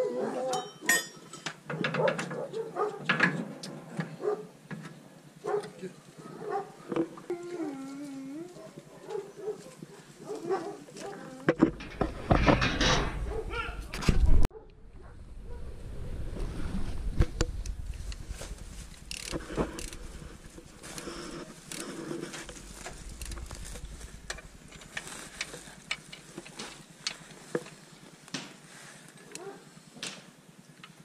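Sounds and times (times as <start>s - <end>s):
low rumble: 11.7s - 27.1s
metal parts clicking and knocking: 19.0s - 20.0s, 20.9s - 27.7s.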